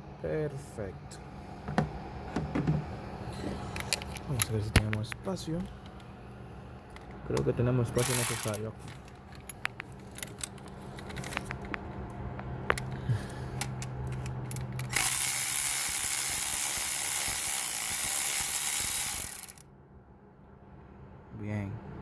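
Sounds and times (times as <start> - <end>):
ratchet wrench clicking: 8.0 - 8.7, 13.6 - 19.6.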